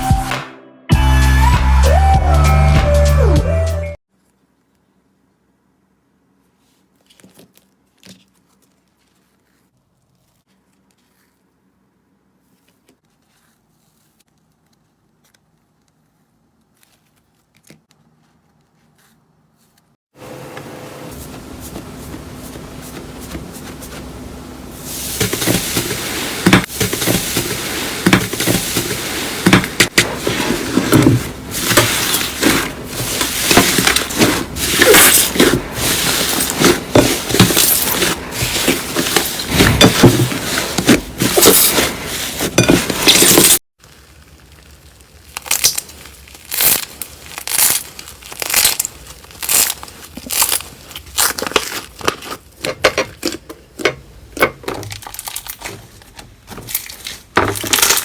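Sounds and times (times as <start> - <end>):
slime crackling and popping: 43.8 - 52.4
slime squishes: 43.8 - 53.8.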